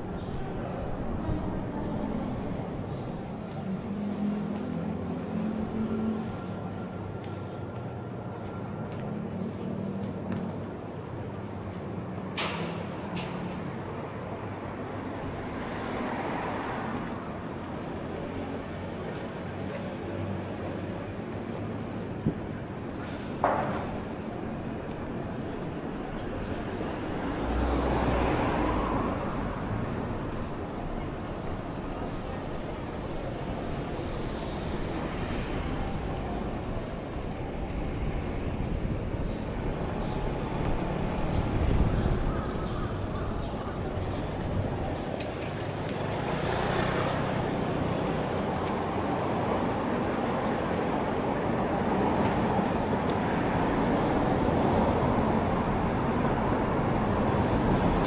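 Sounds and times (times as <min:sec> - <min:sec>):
hum of passing vehicles: 0:12.0 - 0:58.0.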